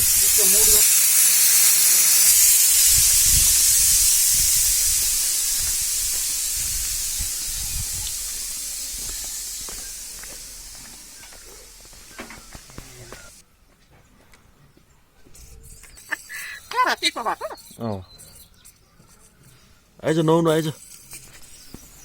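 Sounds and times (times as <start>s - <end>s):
steady high hiss: 0.0s - 13.4s, 15.9s - 17.7s.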